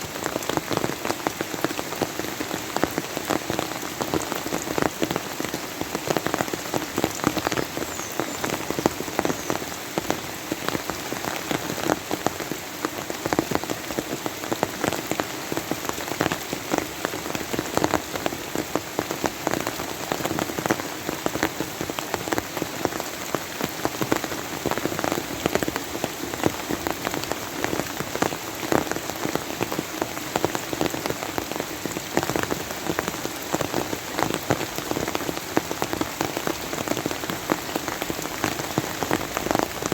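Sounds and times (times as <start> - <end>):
rain drops pattering: 0.0 - 39.9.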